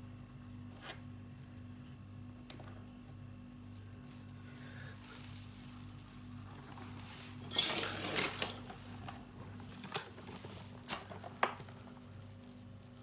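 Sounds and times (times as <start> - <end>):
metal tools clattering: 7.4 - 9.2.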